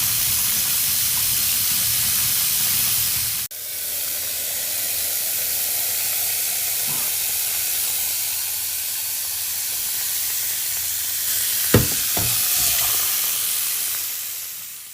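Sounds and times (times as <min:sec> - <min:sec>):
low thumps: 0:11.8 - 0:12.8.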